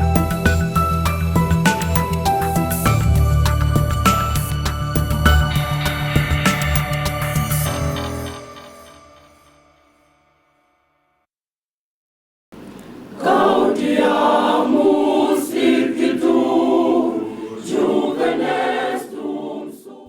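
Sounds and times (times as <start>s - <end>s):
choir singing: 13.1s - 20.0s.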